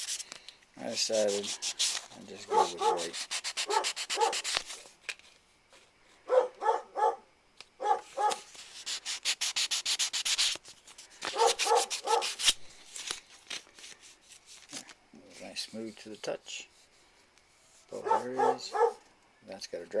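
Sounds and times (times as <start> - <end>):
sandpaper rubbing on plastic: 0.0 - 4.9, 8.0 - 16.9, 17.7 - 19.0.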